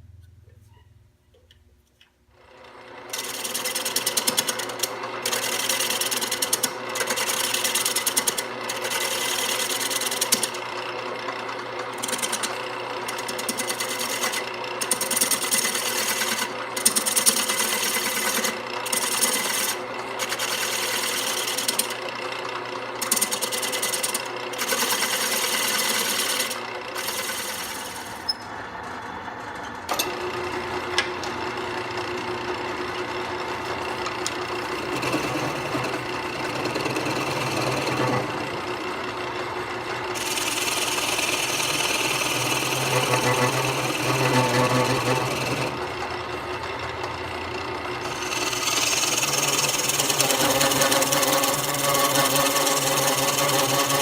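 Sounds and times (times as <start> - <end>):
wood lathe running: 2.4 - 54.0
tool scraping spinning wood: 2.9 - 54.0.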